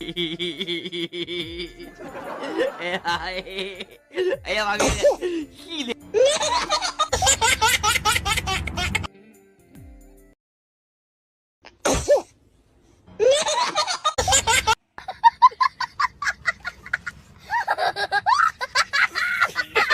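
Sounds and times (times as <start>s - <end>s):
loud laughter: 0.0s - 4.3s, 5.8s - 9.1s, 13.2s - 19.9s
person sneezing: 4.8s - 5.4s, 11.8s - 12.4s.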